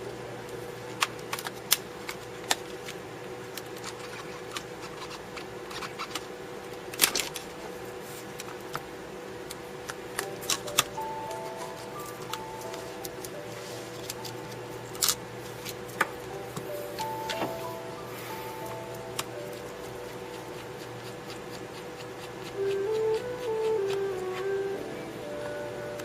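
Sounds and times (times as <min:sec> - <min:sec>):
electrical hum: 0:00.0 - 0:26.0.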